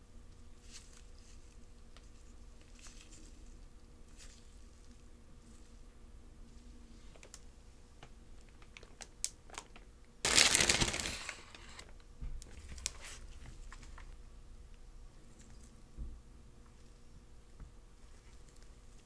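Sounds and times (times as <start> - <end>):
packaging crinkling: 8.0 - 13.2.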